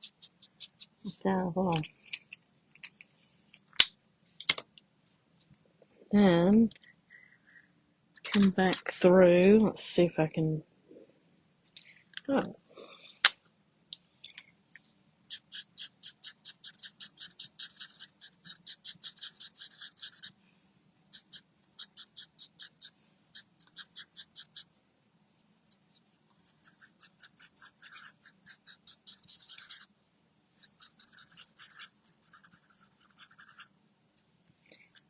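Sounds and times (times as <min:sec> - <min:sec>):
marker scratching over cardstock: 0:00.0 - 0:01.1, 0:15.3 - 0:20.4, 0:21.1 - 0:24.7, 0:26.5 - 0:29.9, 0:30.6 - 0:33.7.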